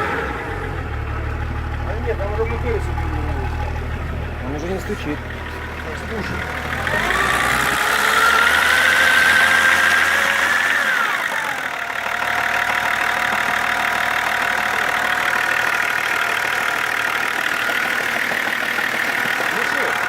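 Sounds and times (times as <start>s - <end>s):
engine revving then idling: 0.0s - 20.0s.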